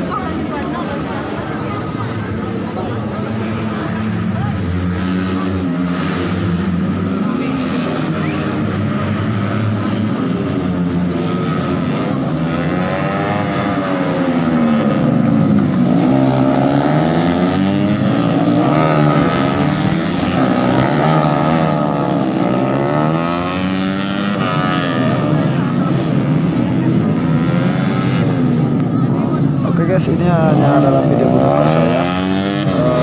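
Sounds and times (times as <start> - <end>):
racing motorcycle engines revving: 0.0 - 33.0.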